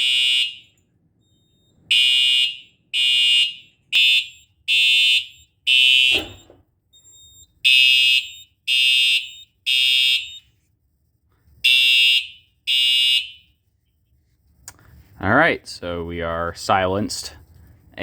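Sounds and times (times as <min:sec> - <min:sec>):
high-pitched alarm horn blasts: 0:00.0 - 0:00.8, 0:01.9 - 0:06.6, 0:11.6 - 0:13.6.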